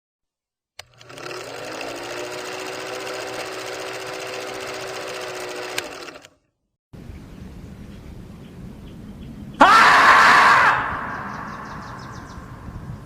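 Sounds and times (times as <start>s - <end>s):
small machine clattering: 0.8s - 6.4s.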